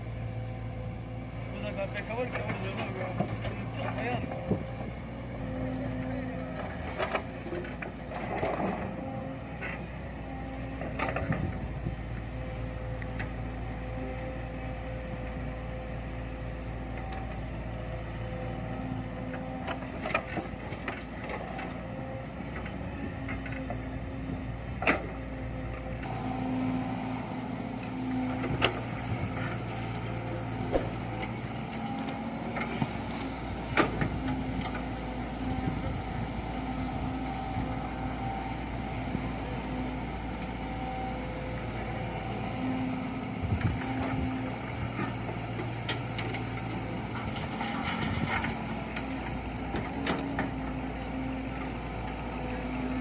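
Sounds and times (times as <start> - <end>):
heavy machine engine running: 0.0 - 53.0.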